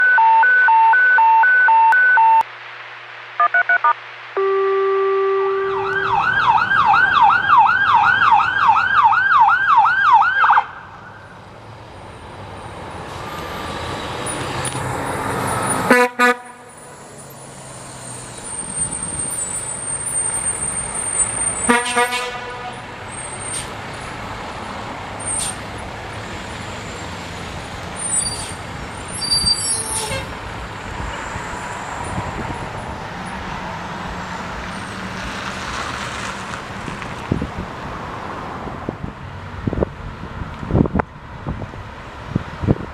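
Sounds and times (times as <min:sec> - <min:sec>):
electronic siren yelping: 0:00.0 - 0:02.4, 0:03.4 - 0:10.8
traffic noise: 0:01.9 - 0:42.9
air horn blasts: 0:04.4 - 0:06.6, 0:15.9 - 0:16.7, 0:21.6 - 0:23.0, 0:29.8 - 0:30.4
heavy vehicle engine: 0:10.8 - 0:42.9.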